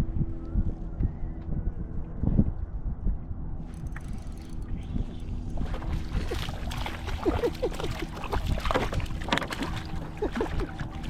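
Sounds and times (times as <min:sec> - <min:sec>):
water against kayak hull: 0:03.6 - 0:11.0.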